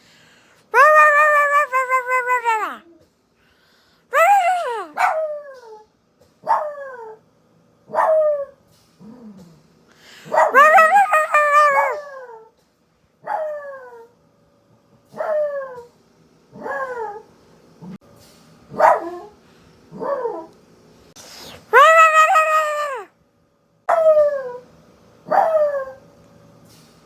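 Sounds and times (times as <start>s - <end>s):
dog howling: 0.8s - 2.9s, 4.1s - 5.8s, 10.3s - 12.5s, 16.6s - 17.2s, 21.7s - 23.1s, 23.9s - 24.6s.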